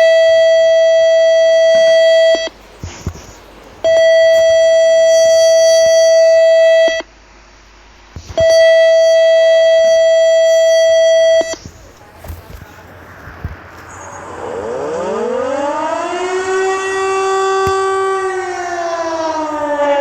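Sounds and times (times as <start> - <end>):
buzzy alert tone blasts: 3.2 - 7.0.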